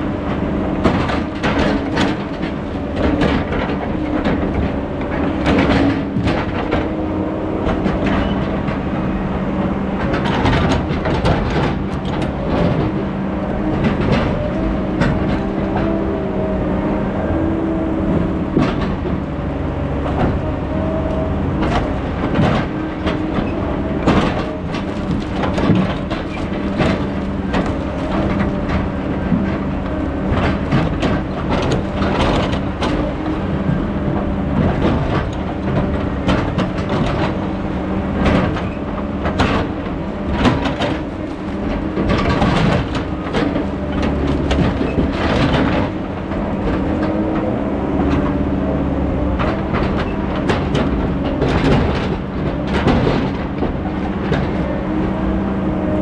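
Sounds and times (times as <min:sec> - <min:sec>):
heavy diesel machinery running: 0:00.0 - 0:56.0
metal clanks and knocks: 0:00.3 - 0:08.9, 0:10.0 - 0:16.2, 0:18.1 - 0:48.6, 0:49.3 - 0:56.0.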